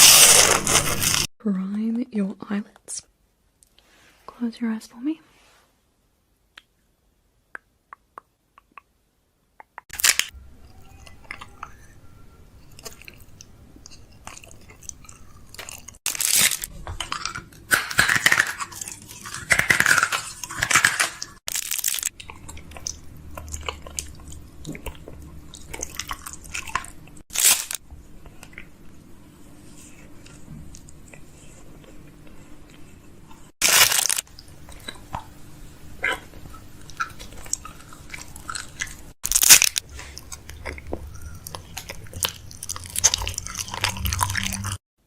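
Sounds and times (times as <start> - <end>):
chewing crunchy snack: 0.0 - 1.3, 9.9 - 12.0, 12.6 - 28.8, 29.5 - 35.4, 36.0 - 44.8
loud crunches: 0.0 - 1.3, 15.6 - 17.1, 17.7 - 22.1, 27.3 - 27.8, 33.6 - 34.3, 37.3 - 44.8.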